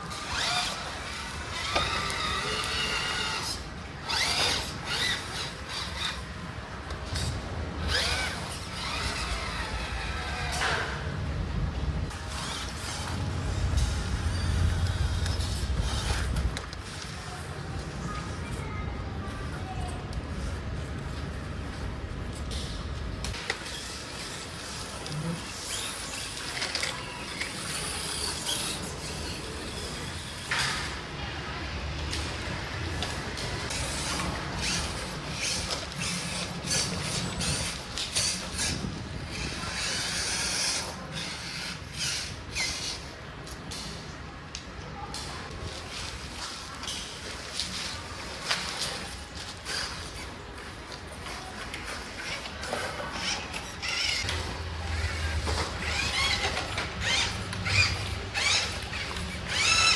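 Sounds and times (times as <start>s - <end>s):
small electric motor whining: 0.1s - 6.5s, 7.1s - 10.9s, 33.7s - 43.1s, 52.2s - 59.9s.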